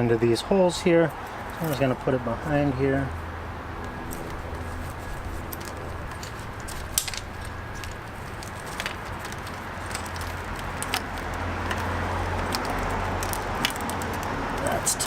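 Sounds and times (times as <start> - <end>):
steady low hum: 0.8 - 10.8
plastic clicks and rustles: 4.1 - 14.8.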